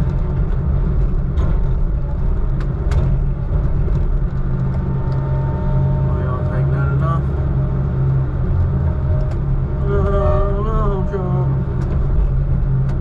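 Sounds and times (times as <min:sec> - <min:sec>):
sharp knocks and rattles: 0:00.0 - 0:05.9
diesel engine running: 0:00.0 - 0:13.0.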